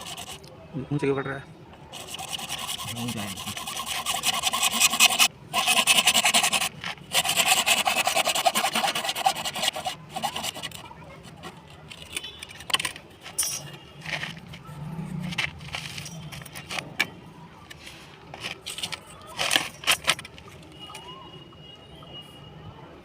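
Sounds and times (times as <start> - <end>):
hand tool rasping: 0.0 - 0.4, 1.9 - 12.1
clicks and handling sounds: 1.7 - 21.1.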